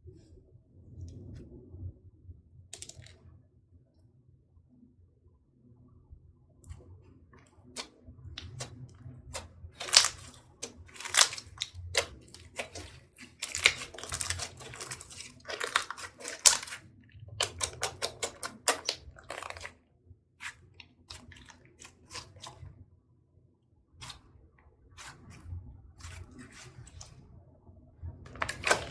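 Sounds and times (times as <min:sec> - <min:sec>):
slime squelching by hand: 0:07.8 - 0:19.8, 0:20.4 - 0:22.7, 0:24.0 - 0:24.3, 0:25.0 - 0:27.3, 0:28.3 - 0:28.9.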